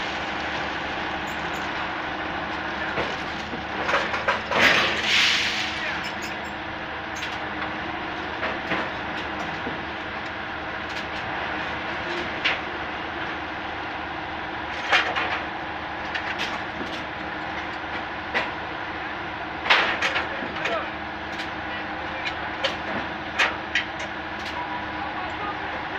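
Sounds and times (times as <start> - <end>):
track repair machinery running: 0.0 - 25.9.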